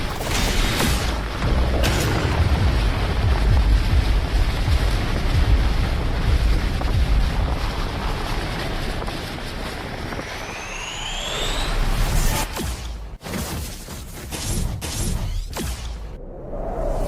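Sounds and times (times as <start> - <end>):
heavy wind-like rumble: 1.2 - 11.8
rising whistling whine: 10.1 - 12.5.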